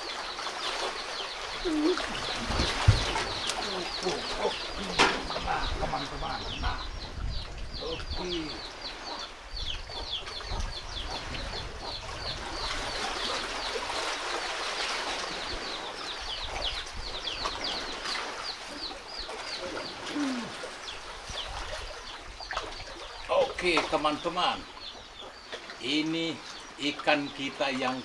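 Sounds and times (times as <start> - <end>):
lake waves: 0.0 - 28.0
chicks peeping: 1.1 - 13.7.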